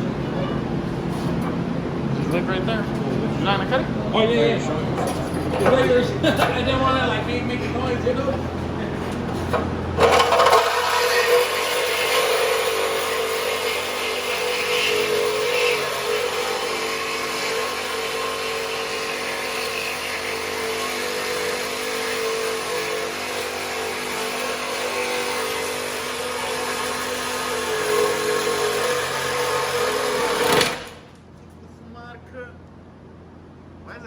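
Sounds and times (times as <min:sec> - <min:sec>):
reciprocating saw cutting steel: 0:09.3 - 0:31.0.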